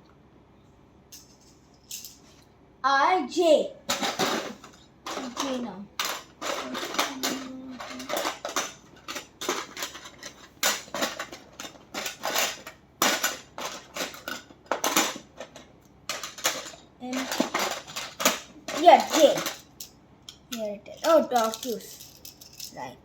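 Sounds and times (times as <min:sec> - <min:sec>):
plastic tiles clicking and clacking: 0:03.9 - 0:22.9.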